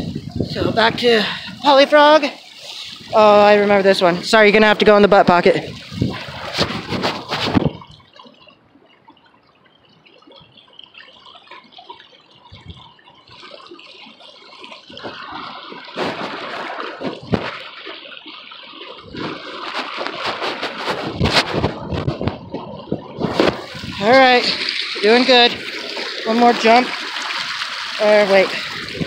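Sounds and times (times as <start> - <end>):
muffled rushing creek water: 0.0 - 29.0
thumps and rubbing in pocket: 5.8 - 7.9, 19.2 - 23.8.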